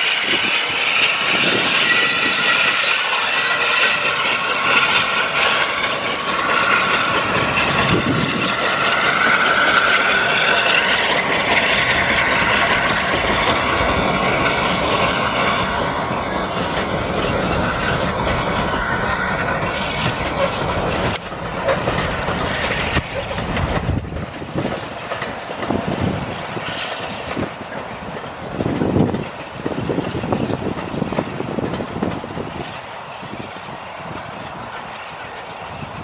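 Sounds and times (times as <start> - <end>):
train wheels clattering on rails: 0.0 - 36.0.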